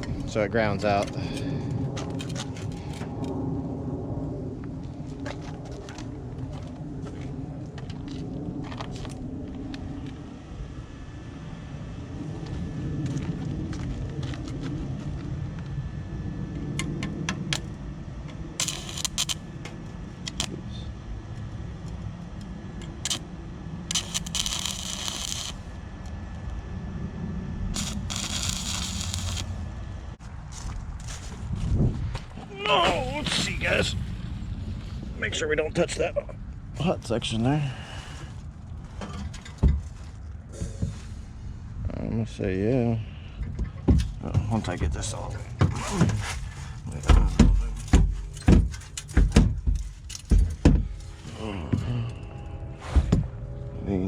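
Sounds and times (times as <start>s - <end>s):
steady low rumble: 0.0s - 54.0s
vehicle engine humming: 8.3s - 31.3s
welder crackling: 17.5s - 26.7s, 27.7s - 30.2s, 32.5s - 34.2s.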